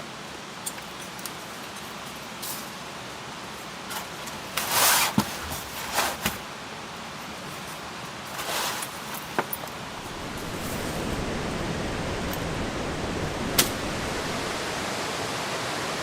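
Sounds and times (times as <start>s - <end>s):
steady hiss: 0.0s - 16.0s
rustling swishes: 8.3s - 14.8s.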